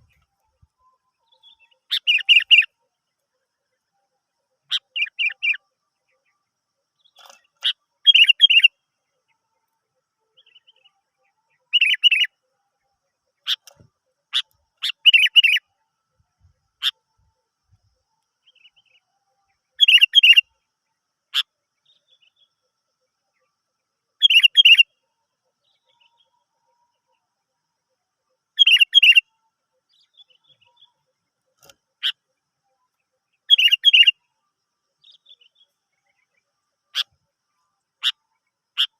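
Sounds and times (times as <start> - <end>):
bird sharp chirps: 0.8 - 2.7, 4.7 - 5.6, 7.0 - 8.7, 11.6 - 12.3, 13.4 - 15.6, 19.8 - 20.5, 24.2 - 24.8, 28.6 - 29.2, 33.4 - 34.2.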